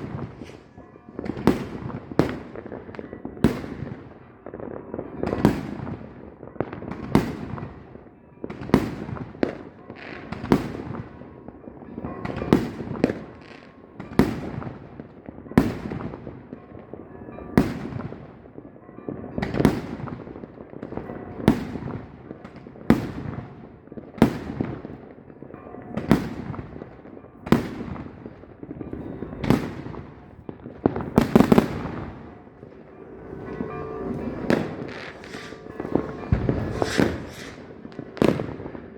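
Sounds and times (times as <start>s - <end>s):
fireworks bangs: 0.0s - 4.0s, 28.9s - 38.9s.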